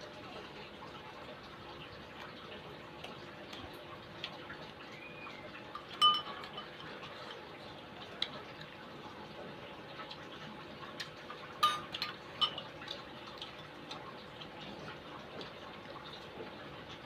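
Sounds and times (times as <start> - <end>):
small clicks of eating: 0.1 - 17.0
spoon clinking against bowl: 5.8 - 6.8, 11.6 - 12.6.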